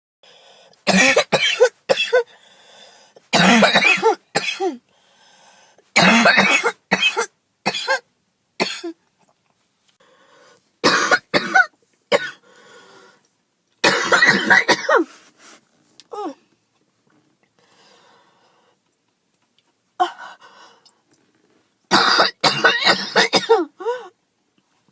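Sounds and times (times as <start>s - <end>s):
quiet breaths: 0.2s - 0.9s, 2.3s - 3.3s, 4.8s - 6.0s, 9.9s - 10.8s, 11.9s - 13.5s, 15.1s - 19.0s, 20.1s - 21.8s
girl coughing: 0.9s - 2.3s, 3.4s - 4.8s, 6.0s - 8.0s, 10.8s - 12.4s, 13.8s - 15.1s, 21.9s - 23.9s.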